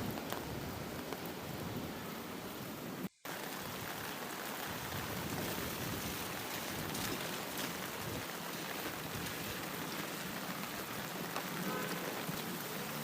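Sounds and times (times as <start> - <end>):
heavy rain hissing: 0.0 - 13.0.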